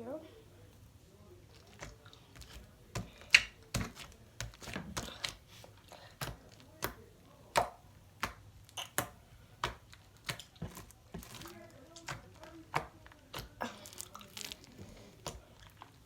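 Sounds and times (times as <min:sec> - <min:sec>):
slime clicking and popping: 0:03.0 - 0:05.4.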